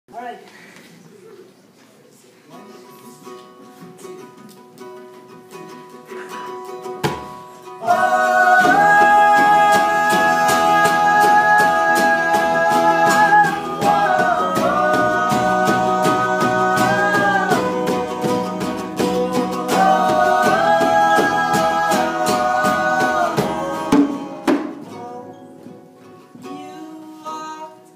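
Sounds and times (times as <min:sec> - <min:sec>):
rhythmic guitar strumming: 0:03.1 - 0:27.9.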